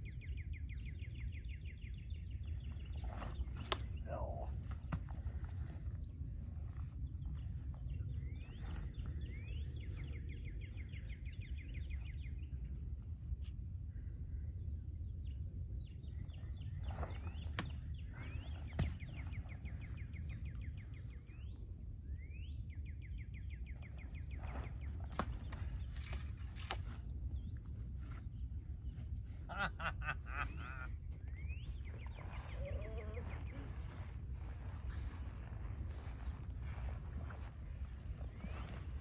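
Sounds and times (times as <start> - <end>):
songbird singing trills: 0.0 - 12.7, 14.4 - 39.0
low outdoor rumble: 0.0 - 39.0.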